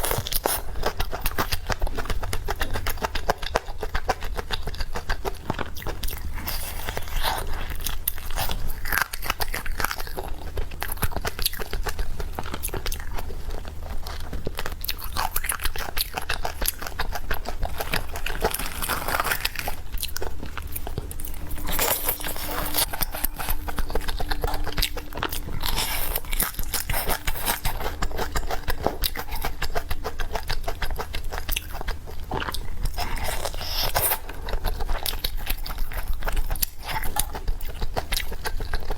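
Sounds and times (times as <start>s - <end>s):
crunchy chewing: 0.0s - 38.9s
low hum: 17.2s - 30.9s.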